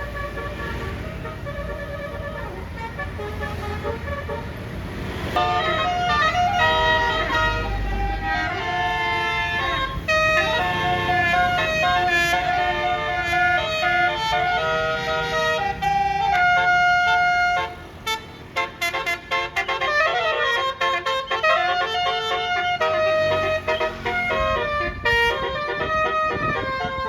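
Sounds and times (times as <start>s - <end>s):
multi-tone air horn melody: 0.0s - 4.7s, 5.3s - 27.0s.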